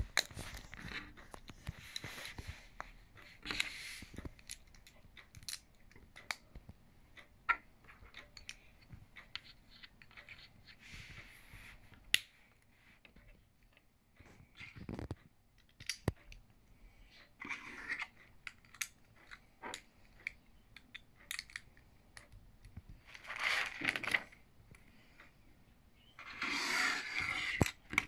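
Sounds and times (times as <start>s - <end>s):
plastic bricks clicking together: 3.4s - 6.6s, 14.6s - 16.4s, 17.5s - 24.3s.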